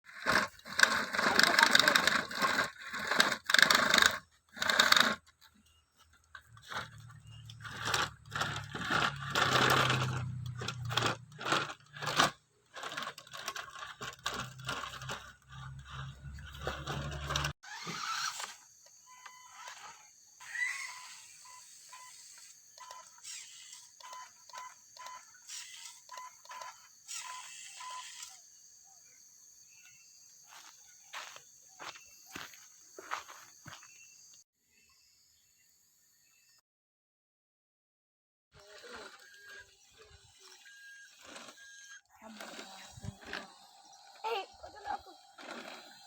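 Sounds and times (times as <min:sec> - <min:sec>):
crunching and scraping: 0:00.1 - 0:17.6
small electric motor humming: 0:00.1 - 0:36.6, 0:38.6 - 0:46.0.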